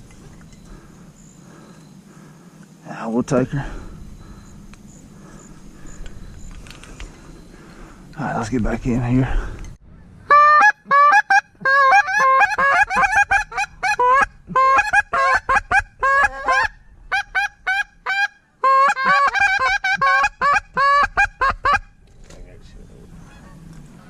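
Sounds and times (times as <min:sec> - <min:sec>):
duck call quacking: 0:10.3 - 0:21.9.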